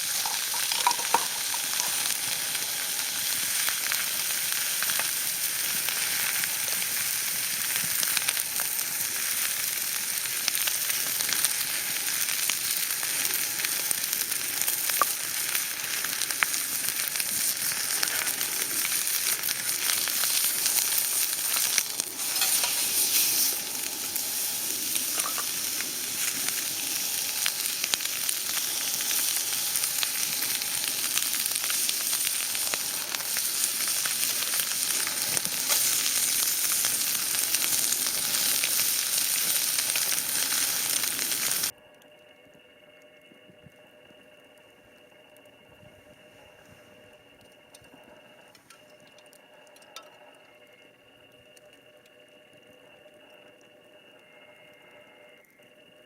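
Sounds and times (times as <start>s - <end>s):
food sizzling in a pan: 0.0s - 41.7s
small popping of frying food: 0.0s - 41.8s.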